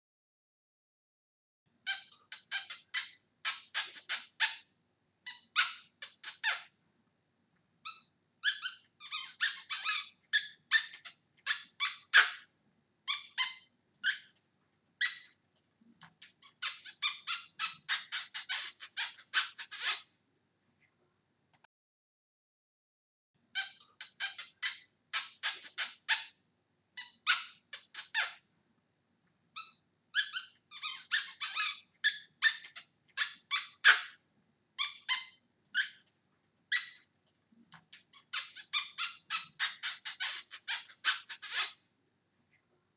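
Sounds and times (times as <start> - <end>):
hamster squeaking: 1.8 - 4.7, 5.3 - 6.8, 7.8 - 12.5, 13.1 - 14.4, 15.0 - 15.4, 16.0 - 20.1, 23.6 - 26.4, 27.0 - 28.4, 29.6 - 34.2, 34.8 - 36.1, 36.7 - 37.1, 37.8 - 41.8.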